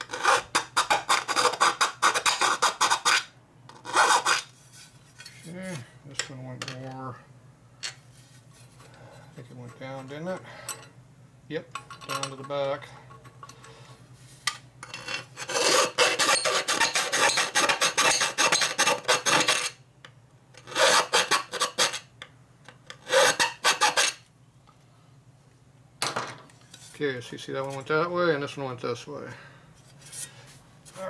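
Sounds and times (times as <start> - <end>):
file rasping on metal: 0.0 - 5.3, 14.9 - 19.8, 20.6 - 22.1, 23.0 - 24.2.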